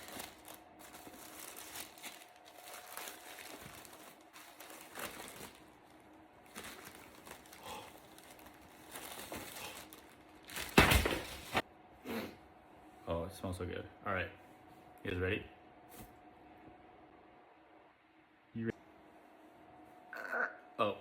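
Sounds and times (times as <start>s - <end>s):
paper wrapping rustling: 0.0s - 11.6s.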